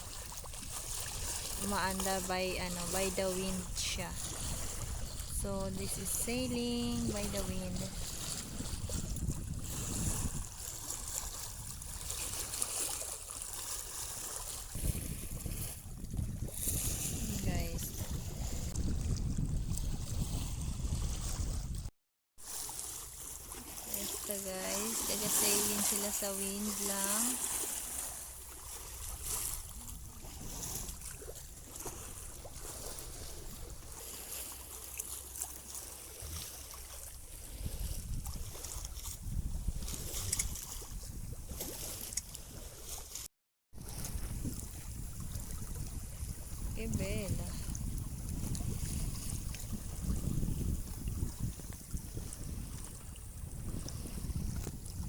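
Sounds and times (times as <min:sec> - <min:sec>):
wind buffeting microphone: 0:00.0 - 0:12.8, 0:13.6 - 0:21.9, 0:24.5 - 0:34.4, 0:36.2 - 0:42.6, 0:43.8 - 0:55.0
water rushing past hull: 0:00.0 - 0:55.0
water hissing along hull: 0:22.4 - 0:38.2.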